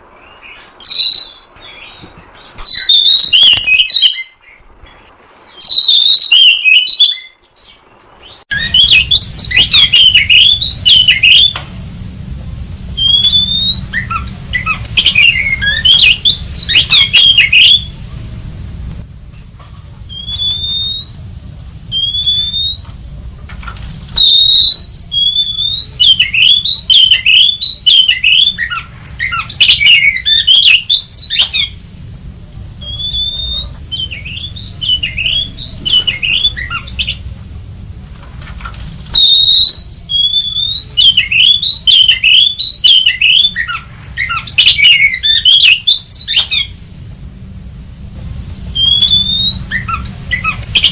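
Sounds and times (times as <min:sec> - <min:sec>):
bird scolding calls and whistles: 0:00.2 - 0:11.6, 0:13.0 - 0:18.0, 0:20.1 - 0:21.2, 0:21.9 - 0:22.9, 0:24.1 - 0:31.8, 0:32.8 - 0:37.3, 0:39.1 - 0:46.8, 0:48.7 - 0:50.9
steady low rumble: 0:07.7 - 0:50.9.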